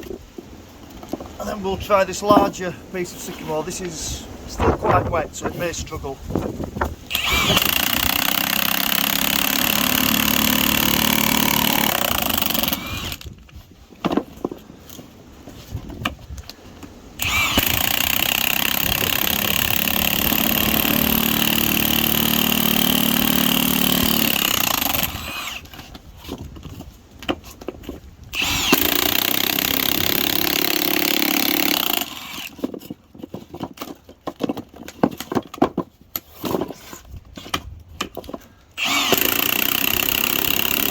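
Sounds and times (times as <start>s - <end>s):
impact wrench driving screw bit: 7.1s - 13.3s, 17.2s - 25.7s, 28.4s - 32.6s, 38.8s - 40.9s.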